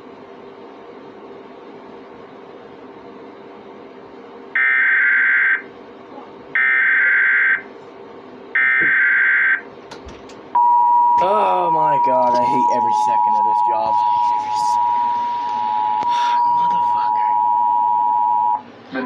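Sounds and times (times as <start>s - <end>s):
low steady hum: 0.0s - 19.0s
shrill warbling digital data tone: 11.2s - 18.6s.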